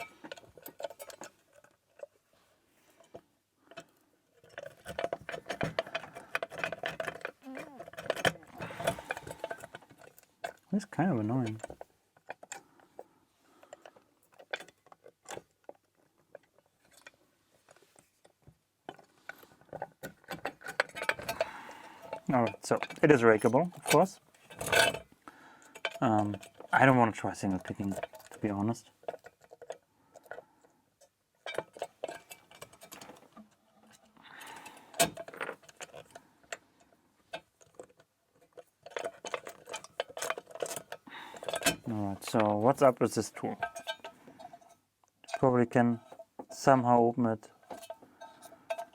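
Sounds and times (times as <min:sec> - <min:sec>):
lock pick clicking and scraping: 0:03.7 - 0:10.7, 0:18.9 - 0:26.7, 0:34.4 - 0:36.6, 0:37.3 - 0:44.7.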